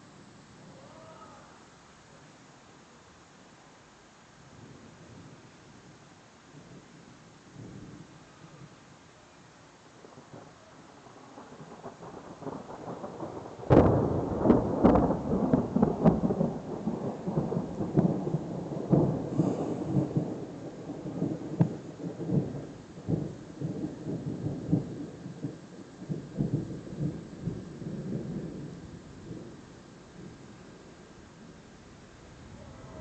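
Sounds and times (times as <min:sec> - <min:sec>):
thunder rumbling and cracking: 0:10.1 - 0:30.5.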